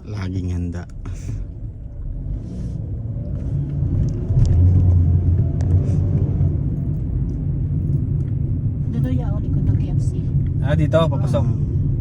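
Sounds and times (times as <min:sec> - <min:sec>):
car engine rumble inside cabin: 0:00.0 - 0:12.0
road noise: 0:00.0 - 0:12.0.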